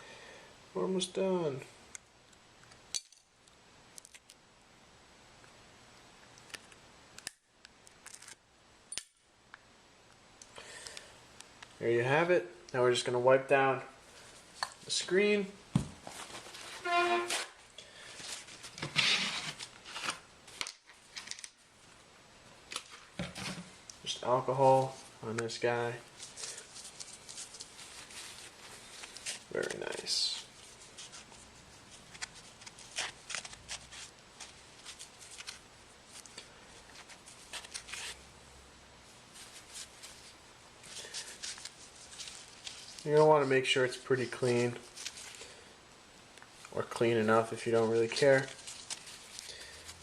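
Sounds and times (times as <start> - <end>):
cloth rubbing phone frame: 16.3 - 17.6.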